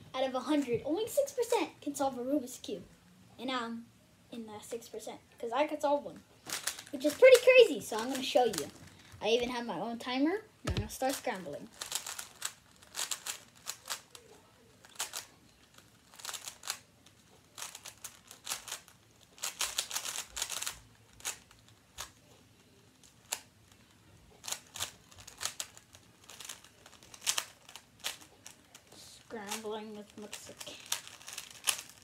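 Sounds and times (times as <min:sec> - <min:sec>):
puzzle cube clicking and rattling: 0:06.5 - 0:09.0, 0:10.7 - 0:32.0.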